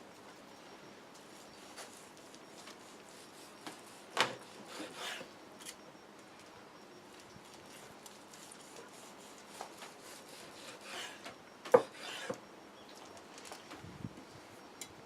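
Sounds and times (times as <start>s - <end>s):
scraping on wood: 3.7s - 5.3s, 8.4s - 12.4s.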